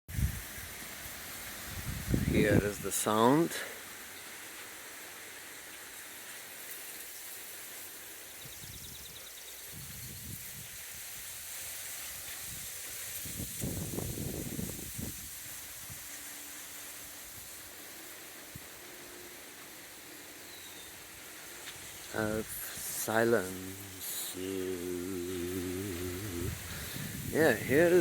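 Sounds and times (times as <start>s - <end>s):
steady hiss: 0.1s - 28.0s
low rumbling: 22.3s - 28.0s.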